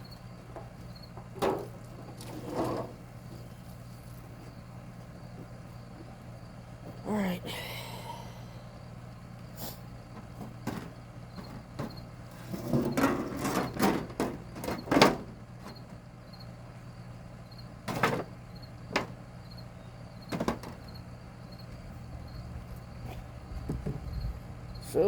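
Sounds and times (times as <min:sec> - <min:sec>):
crickets chirping: 0:00.0 - 0:25.0
low steady hum: 0:00.0 - 0:25.0
objects knocking and clattering: 0:20.3 - 0:20.8.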